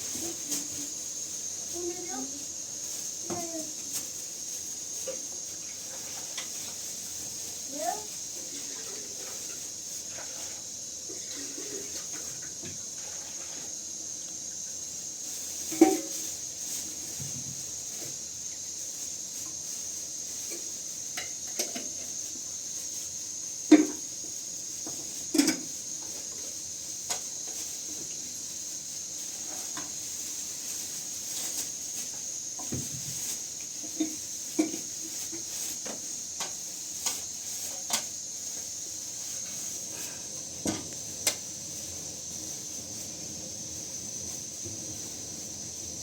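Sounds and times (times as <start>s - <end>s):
steady high hiss: 0.0s - 46.0s
pots and dishes clinking: 15.7s - 16.2s, 21.2s - 22.1s, 25.3s - 25.7s.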